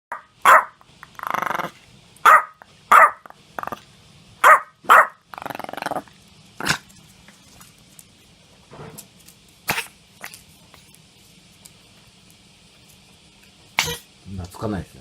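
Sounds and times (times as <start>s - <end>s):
small dog sneezing: 9.6s - 10.3s, 13.8s - 14.1s.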